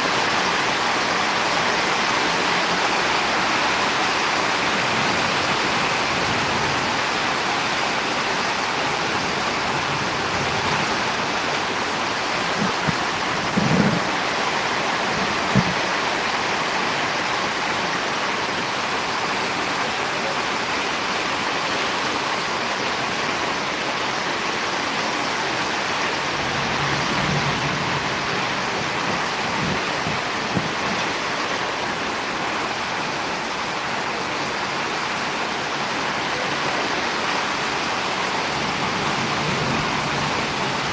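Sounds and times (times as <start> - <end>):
heavy rain rushing: 0.0 - 40.9
low thumps: 15.3 - 15.8.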